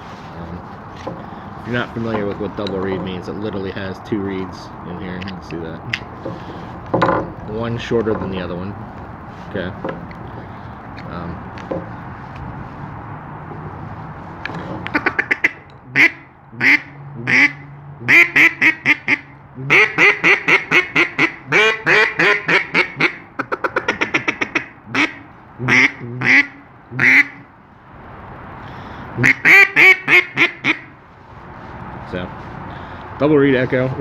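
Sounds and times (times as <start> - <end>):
duck call quacks: 14.9 - 27.5, 29.2 - 30.9.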